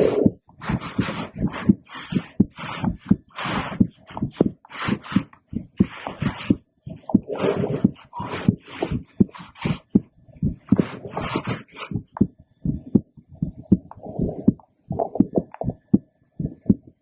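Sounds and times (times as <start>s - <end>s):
heartbeat thumps through stethoscope: 0.0s - 17.0s
stethoscope rustling hiss: 0.6s - 6.6s.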